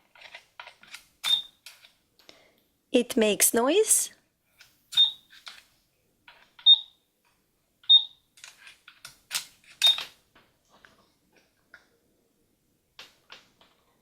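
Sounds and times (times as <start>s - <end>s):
toy card reader beeping: 1.2s - 1.6s, 5.0s - 5.3s, 6.6s - 6.9s, 7.8s - 8.2s, 9.8s - 10.1s.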